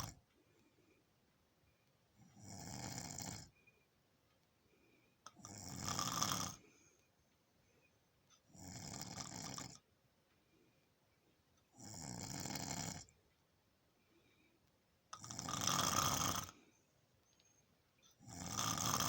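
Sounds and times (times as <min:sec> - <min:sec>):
person snoring: 0:02.4 - 0:03.5, 0:05.3 - 0:06.6, 0:08.5 - 0:09.8, 0:11.8 - 0:13.1, 0:15.2 - 0:16.6, 0:18.2 - 0:19.0.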